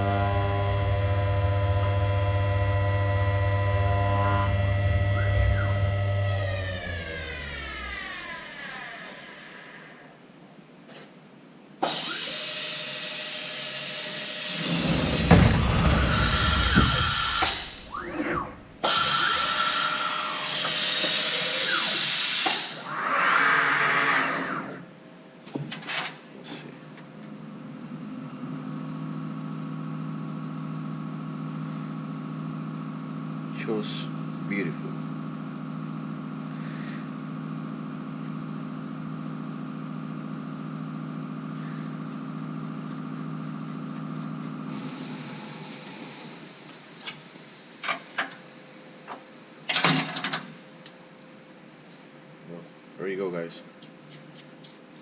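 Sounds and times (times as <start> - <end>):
power tool hissing and whirring: 0.0 - 10.1, 11.8 - 22.9, 44.7 - 49.2
machine hum: 0.0 - 10.4, 14.1 - 23.2.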